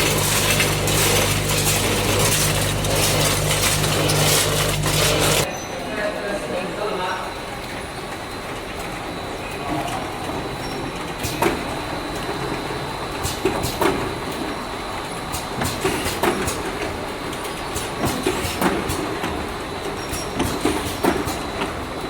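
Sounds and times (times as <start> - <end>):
bottling machine running: 0.0 - 5.5
machine clacks and knocks: 15.6 - 21.8.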